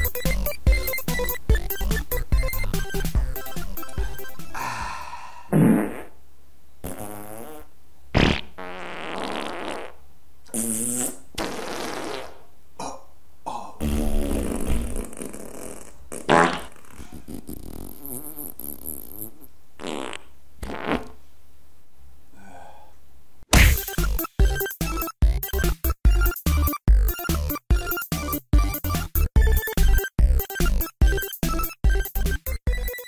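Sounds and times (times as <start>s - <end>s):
fart sounds: 5.5s - 6.2s, 6.8s - 12.5s, 13.8s - 21.2s.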